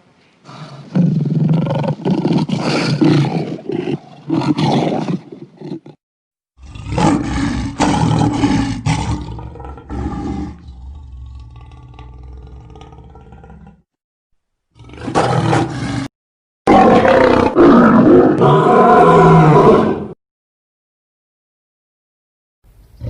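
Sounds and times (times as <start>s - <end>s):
big cat roaring: 0.5s - 6.0s, 6.6s - 13.8s, 14.8s - 16.1s, 16.7s - 20.2s.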